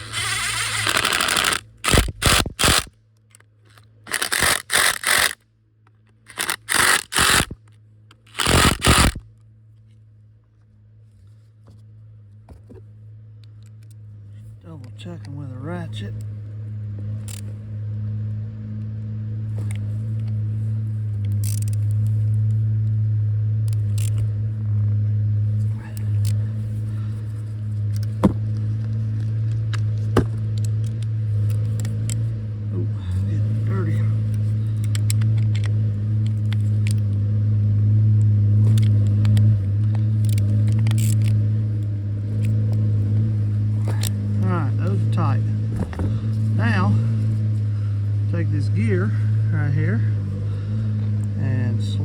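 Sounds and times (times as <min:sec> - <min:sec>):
engine idling: 0:00.0 - 0:02.9, 0:19.4 - 0:37.8, 0:38.6 - 0:52.0
ratchet wrench rasps: 0:00.0 - 0:02.9, 0:03.7 - 0:05.4, 0:06.2 - 0:07.6, 0:08.2 - 0:09.2, 0:21.3 - 0:22.1, 0:23.7 - 0:24.3, 0:38.7 - 0:42.5
low mechanical hum: 0:00.0 - 0:52.0.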